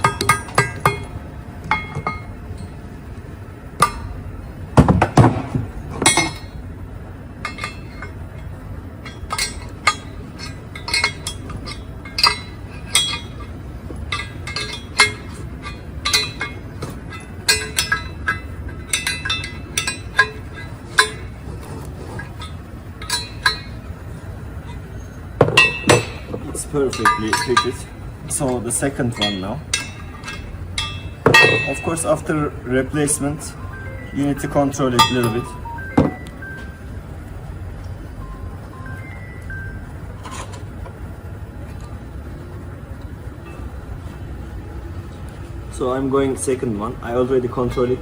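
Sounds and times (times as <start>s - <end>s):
metal tool clinking on metal: 0.0s - 2.8s, 6.0s - 6.6s, 7.4s - 24.0s, 24.6s - 36.7s.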